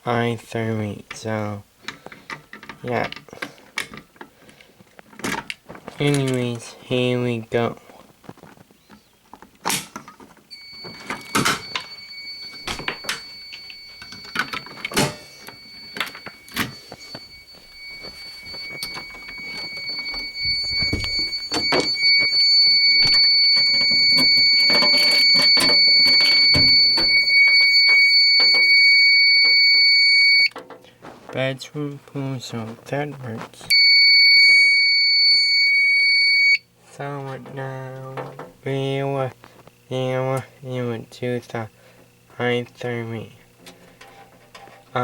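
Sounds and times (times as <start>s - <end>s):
knocks and clicks of handling: 8.3s - 28.8s, 30.5s - 31.4s
fire alarm high-pitched tone: 10.5s - 30.6s, 33.7s - 36.7s.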